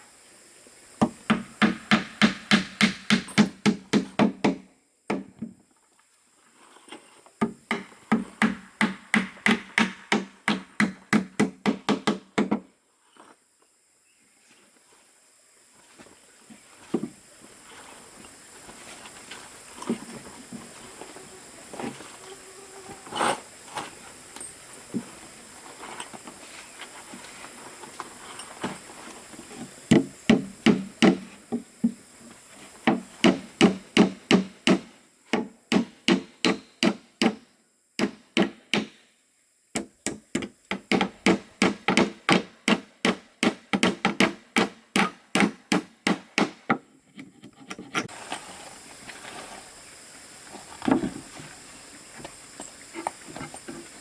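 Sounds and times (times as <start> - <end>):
hammer striking wood: 1.0 - 5.4, 7.4 - 12.6, 29.9 - 31.4, 32.8 - 37.4, 38.0 - 39.0, 39.8 - 46.8.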